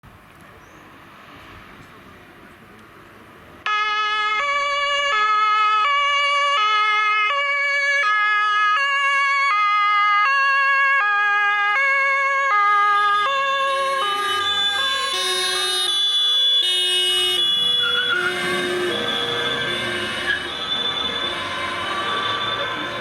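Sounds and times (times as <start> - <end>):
faint street noise: 0.0 - 23.0
two-tone siren: 3.7 - 23.0.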